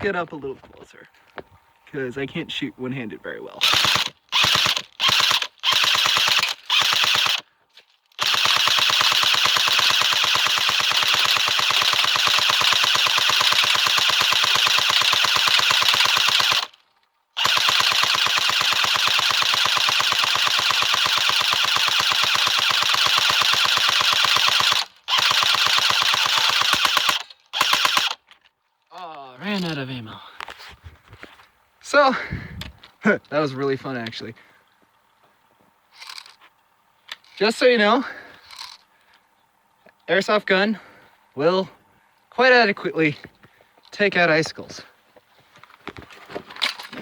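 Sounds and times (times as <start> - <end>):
airsoft rifle firing full auto: 3.6 - 7.5, 8.2 - 16.8, 17.4 - 28.2.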